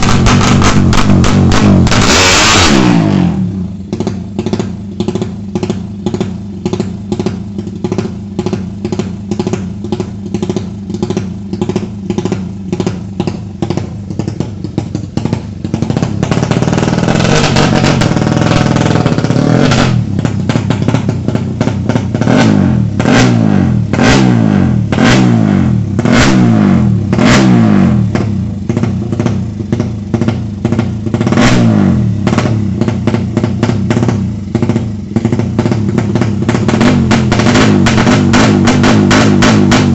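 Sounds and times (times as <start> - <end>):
drumming music: 0.0 - 3.0, 11.5 - 22.1, 36.0 - 39.9
motorcycle engine revving: 0.0 - 39.9.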